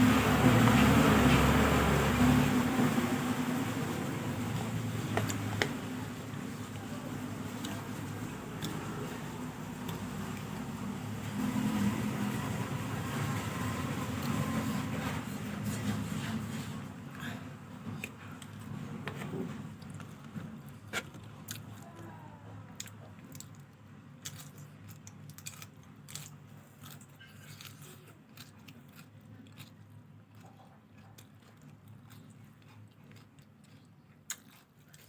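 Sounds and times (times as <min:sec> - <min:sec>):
person chewing food: 0:00.0 - 0:02.1, 0:04.4 - 0:22.0, 0:22.7 - 0:35.0.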